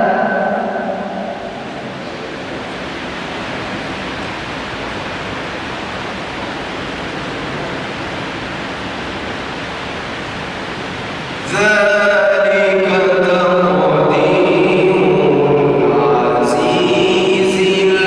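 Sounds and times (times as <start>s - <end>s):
steady rushing noise: 0.0s - 18.0s
man chanting recitation: 11.4s - 18.0s.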